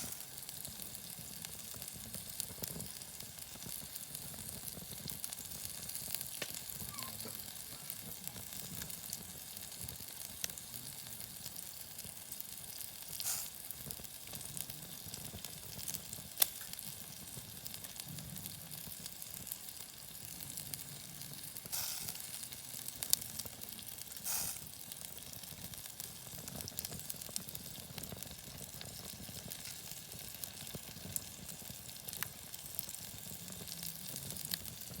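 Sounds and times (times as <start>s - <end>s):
meat sizzling on a griddle: 0.0s - 35.0s
sharp pops: 6.4s - 7.9s.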